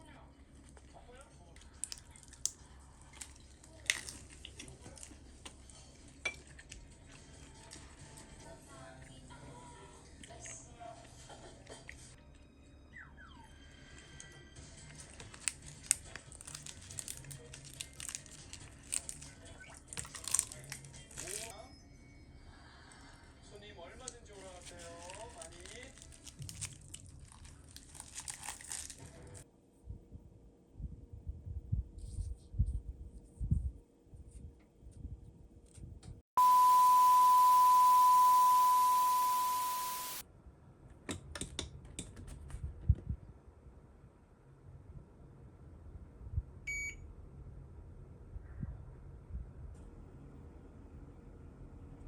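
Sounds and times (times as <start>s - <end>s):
crinkling and tearing: 1.6s - 5.8s, 14.9s - 21.5s, 24.1s - 29.4s
loud electronic beep tone: 36.4s - 40.2s.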